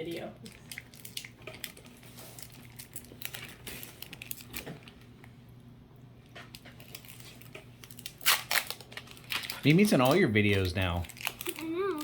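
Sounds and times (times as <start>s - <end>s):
trading cards rustling and ticking: 6.3s - 12.0s.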